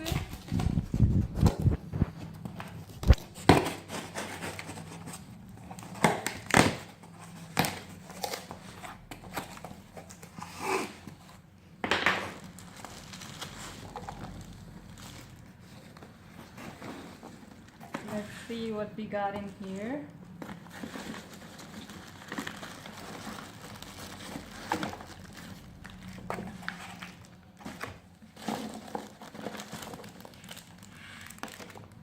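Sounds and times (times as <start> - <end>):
wrapping crinkling: 12.3 - 18.7, 20.4 - 32.0.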